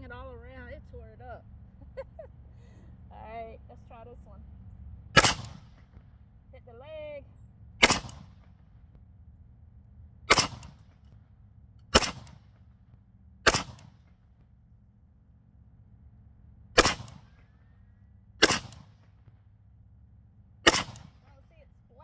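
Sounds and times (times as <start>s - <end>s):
rifle shots with echo: 5.2s - 6.0s, 7.8s - 8.6s, 10.3s - 11.1s, 11.9s - 12.7s, 13.4s - 14.3s, 16.8s - 17.6s, 18.4s - 19.3s, 20.6s - 21.4s.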